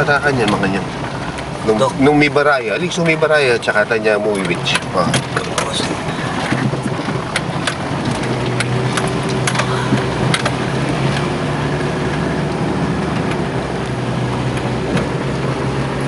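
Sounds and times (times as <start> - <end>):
vehicle engine running: 0.0 - 16.0
sharp clicks and knocks: 0.4 - 1.5, 4.2 - 15.2.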